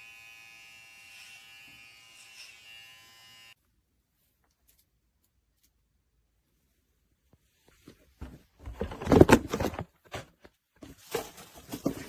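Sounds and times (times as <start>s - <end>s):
electric hair clippers buzzing: 0.0s - 3.6s.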